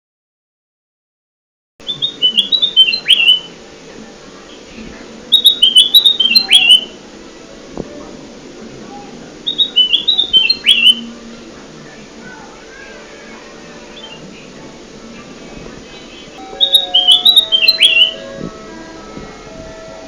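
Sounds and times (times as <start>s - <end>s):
bulbul whistled song: 1.8s - 3.6s, 5.3s - 7.0s, 9.4s - 11.2s, 15.9s - 20.0s
faint steady hum: 1.8s - 20.0s.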